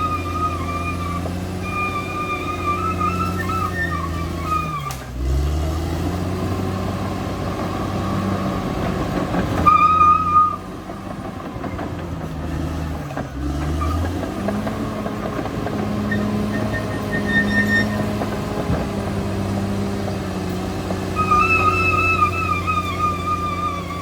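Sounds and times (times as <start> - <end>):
high squeal: 0.0 - 5.1, 9.6 - 10.7, 16.0 - 18.2, 21.1 - 24.0
bulldozer diesel engine: 0.0 - 24.0
steel tracks clattering: 8.7 - 19.2.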